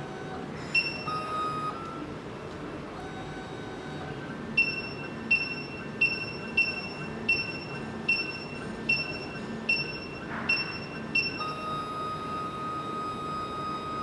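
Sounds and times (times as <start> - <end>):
high electronic beep: 0.8 - 1.9, 4.6 - 14.0.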